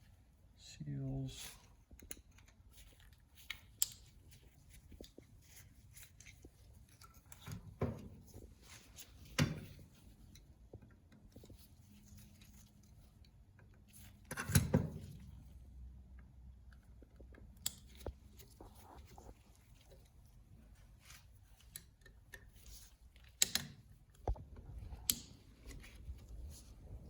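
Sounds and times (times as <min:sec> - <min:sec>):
tools and parts clicking: 0:21.5 - 0:26.2.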